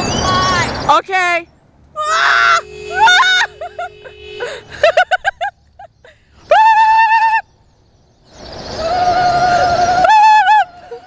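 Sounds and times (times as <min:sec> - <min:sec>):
car horn: 0:02.3 - 0:04.8
bursts of laughter: 0:02.9 - 0:07.0.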